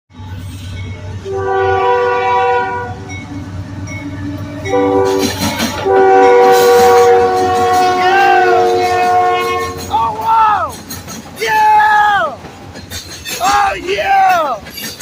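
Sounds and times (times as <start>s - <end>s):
train rumbling: 0.1s - 15.0s
locomotive air horn blasts: 1.2s - 3.1s, 4.6s - 10.0s.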